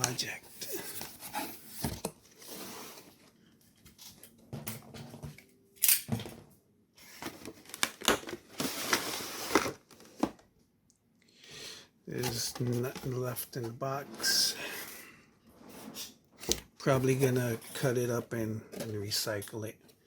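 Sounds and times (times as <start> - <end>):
cardboard tearing and rustling: 7.1 - 10.3.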